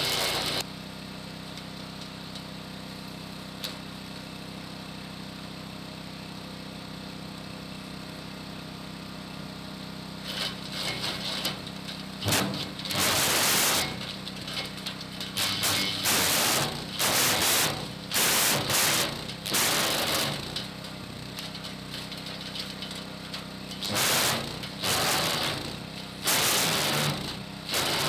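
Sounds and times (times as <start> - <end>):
garden shredder running: 0.0 - 0.7, 6.9 - 28.0
branches crunching in shredder: 10.2 - 28.0.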